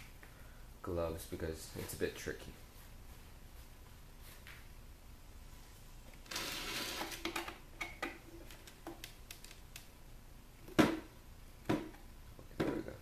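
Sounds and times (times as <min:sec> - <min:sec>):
small clicks: 0:08.5 - 0:09.9.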